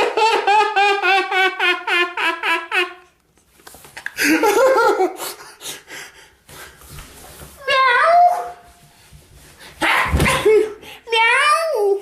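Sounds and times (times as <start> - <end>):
person laughing: 4.2 - 5.8.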